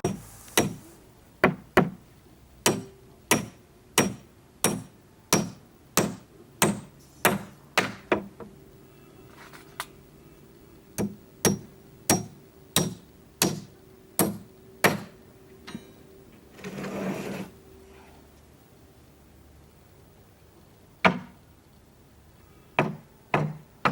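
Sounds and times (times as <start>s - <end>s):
hammer blows on timber: 0.0s - 2.0s
short rasping scrape: 16.6s - 17.5s.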